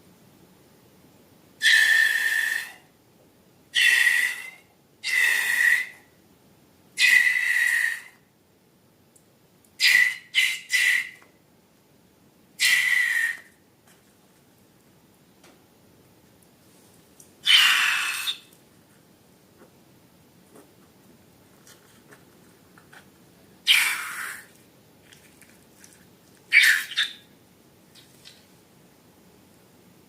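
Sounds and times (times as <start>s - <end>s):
air squealing out of balloon: 12.6s - 13.5s, 17.4s - 18.5s.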